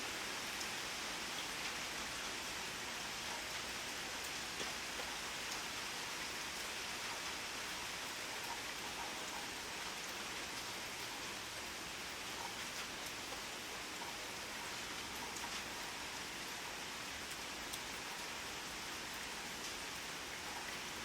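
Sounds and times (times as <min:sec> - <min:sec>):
rain pattering on a surface: 0:00.0 - 0:21.0.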